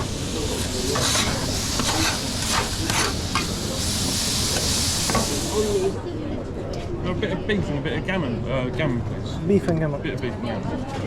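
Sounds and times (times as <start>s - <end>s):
hot food sizzling: 0.0s - 6.0s
metal serving utensils scraping: 0.6s - 3.6s.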